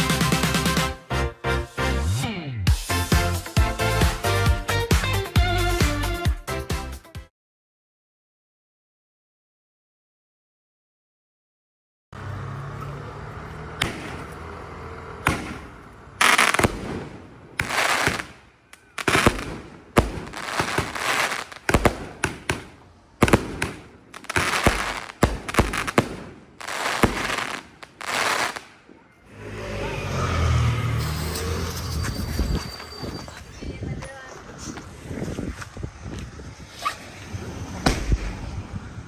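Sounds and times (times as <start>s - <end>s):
hissing crackle of fireworks: 13.7s - 29.0s, 35.0s - 39.0s
fireworks bangs: 13.7s - 29.1s, 36.6s - 39.0s.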